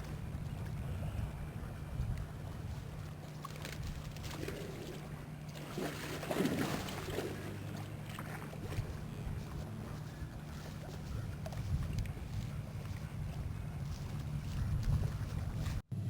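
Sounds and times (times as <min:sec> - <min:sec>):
wind noise: 0:00.0 - 0:04.6, 0:08.6 - 0:15.8
low engine hum: 0:00.0 - 0:16.0.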